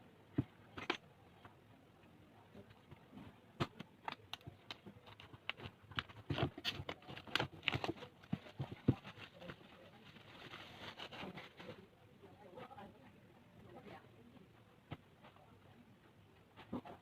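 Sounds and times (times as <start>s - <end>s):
packaging clicks taps and rustles: 3.6s - 9.6s.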